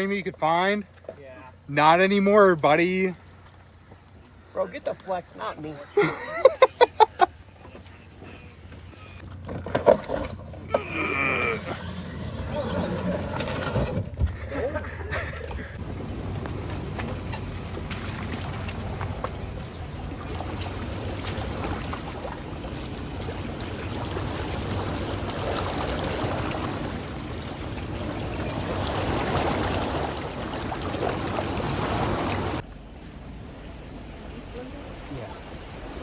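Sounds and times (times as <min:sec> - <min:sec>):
water splashing around tyres: 0:00.0 - 0:36.0
off-road vehicle engine running: 0:06.9 - 0:25.4.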